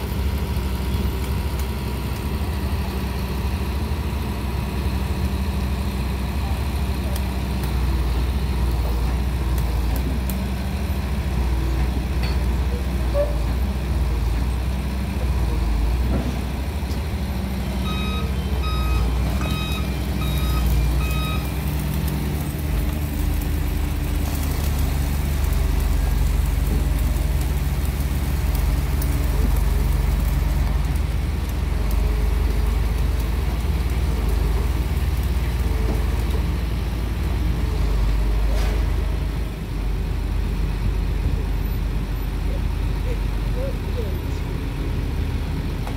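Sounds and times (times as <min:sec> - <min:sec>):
heavy diesel engine running: 0:00.0 - 0:45.9
electronic alarm beeps: 0:17.9 - 0:21.5.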